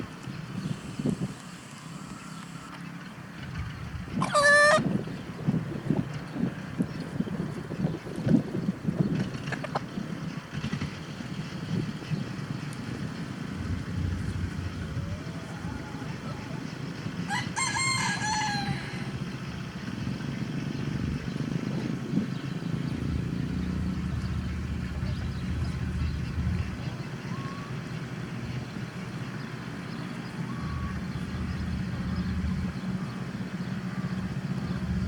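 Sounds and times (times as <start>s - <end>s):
rooster crowing: 4.2s - 4.8s, 15.0s - 16.6s, 17.2s - 19.2s
faint chicken calls: 4.2s - 4.9s, 14.3s - 19.6s
steady low hum: 10.4s - 35.0s.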